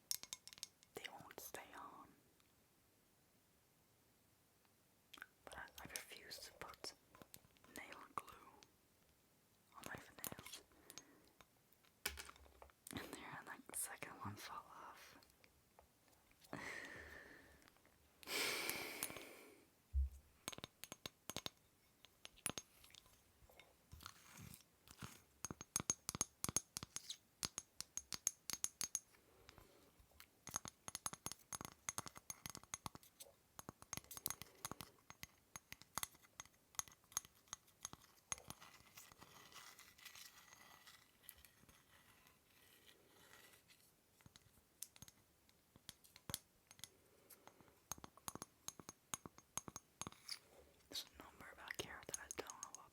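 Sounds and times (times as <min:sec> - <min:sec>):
light crinkly scratches: 0:23.9 - 0:25.3, 0:37.4 - 0:44.6.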